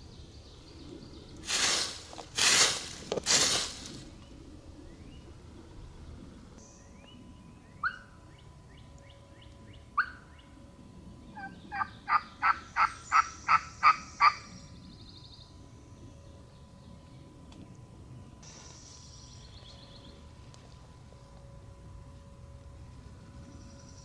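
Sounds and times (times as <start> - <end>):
faint songbird notes: 4.1 - 20.6
turkey yelping: 7.8 - 8.1, 10.0 - 10.2, 11.4 - 14.4.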